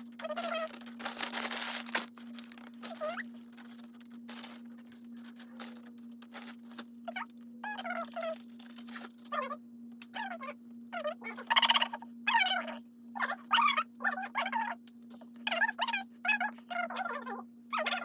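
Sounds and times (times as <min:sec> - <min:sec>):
rustling and crinkling: 0:00.0 - 0:09.5
steady low hum: 0:00.0 - 0:18.0
squeaky chirps: 0:10.2 - 0:14.7.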